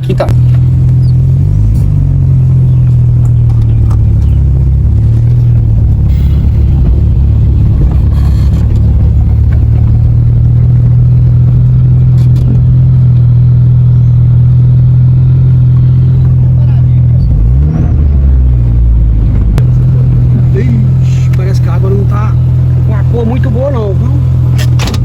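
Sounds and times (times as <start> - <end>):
car engine and road rumble: 0.0 - 25.0.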